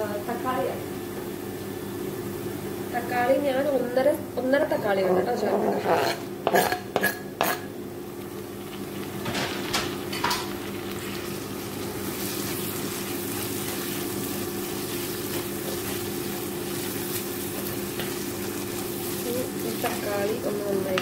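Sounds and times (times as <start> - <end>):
utensil scraping in a pan: 5.5 - 7.7
onions sizzling: 5.8 - 21.0.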